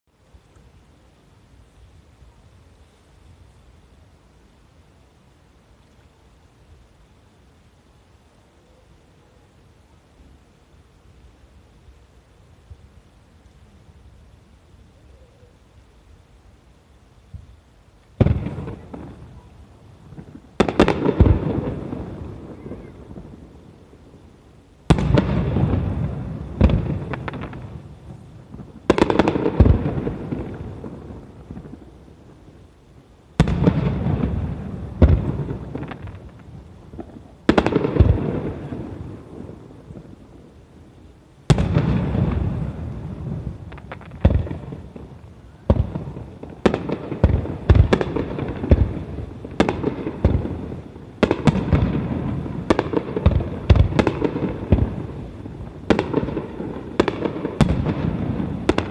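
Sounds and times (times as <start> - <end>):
fireworks booming with echo: 17.3 - 58.9.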